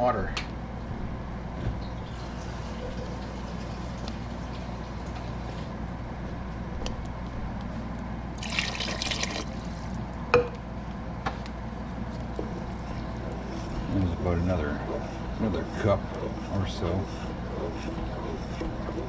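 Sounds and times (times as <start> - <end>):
steady low hum: 5.8 - 19.0
water splashing into pot: 8.4 - 10.1.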